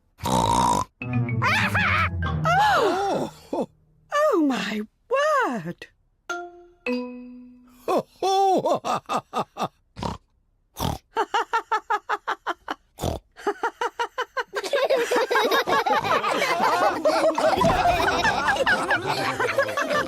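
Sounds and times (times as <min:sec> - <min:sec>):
cartoon pigs snorting: 0:00.2 - 0:00.9, 0:10.0 - 0:11.1, 0:13.0 - 0:13.3, 0:17.3 - 0:19.4
cartoon characters laughing: 0:01.4 - 0:02.8, 0:13.4 - 0:20.0.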